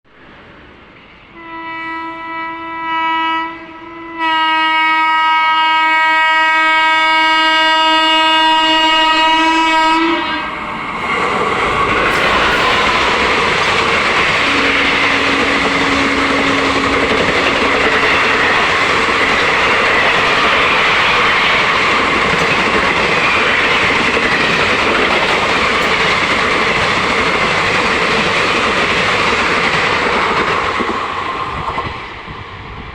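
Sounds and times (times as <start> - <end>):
locomotive horn blasts: 1.3 - 10.6, 14.3 - 18.5
train wheels rattling over rail joints: 10.6 - 32.4.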